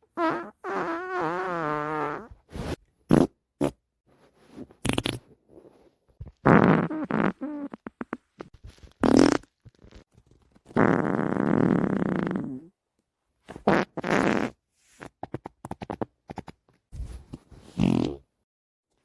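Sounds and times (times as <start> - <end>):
human farts: 0.1 - 3.8, 4.8 - 5.3, 6.3 - 10.0, 10.7 - 12.7, 13.5 - 16.6, 17.7 - 18.3.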